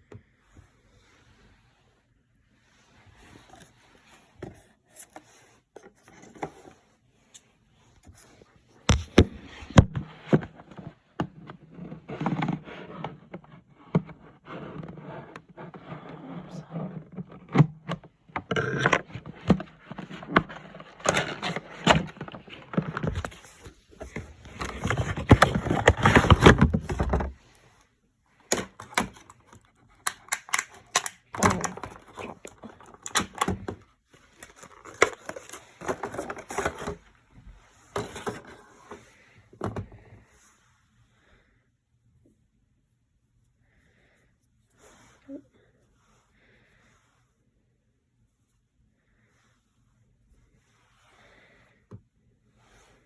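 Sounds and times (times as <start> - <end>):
packaging rustling: 34.3 - 37.0.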